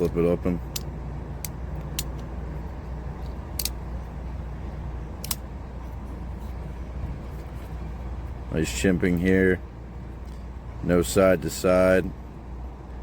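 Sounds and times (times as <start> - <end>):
folding knife clicking: 3.5 - 3.8.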